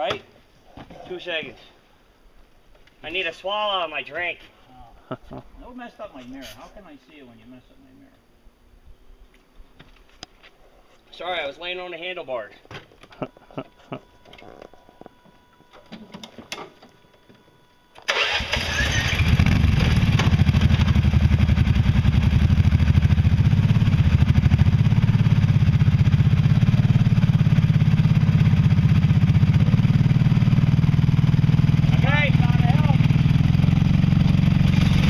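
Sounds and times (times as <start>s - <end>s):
engine starting and running: 18.0s - 22.9s, 26.5s - 35.0s.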